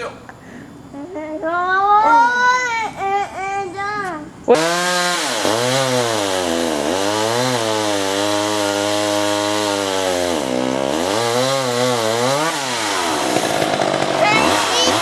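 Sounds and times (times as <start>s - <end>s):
chainsaw cutting wood: 4.5s - 15.0s.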